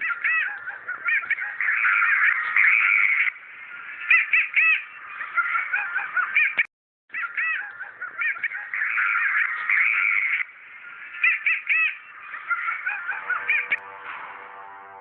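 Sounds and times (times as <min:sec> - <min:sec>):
squawking bird-like calls: 0:00.0 - 0:15.0.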